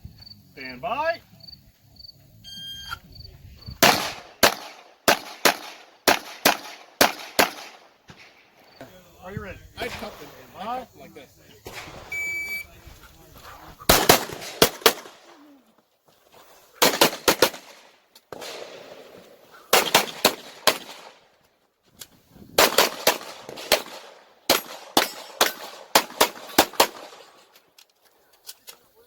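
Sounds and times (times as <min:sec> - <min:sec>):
pistol shots in fast strings: 0:03.8 - 0:07.8, 0:13.9 - 0:15.2.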